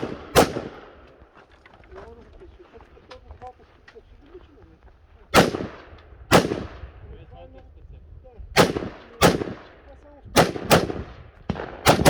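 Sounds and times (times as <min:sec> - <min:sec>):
rifle shots echoing: 0:00.0 - 0:01.2, 0:05.3 - 0:07.0, 0:08.6 - 0:12.0.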